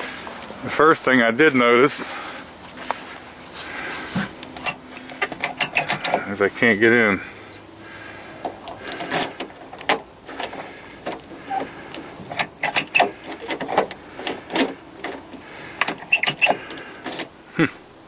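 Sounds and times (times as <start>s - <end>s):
car door handle clicking: 4.6s - 6.2s, 8.5s - 17.2s.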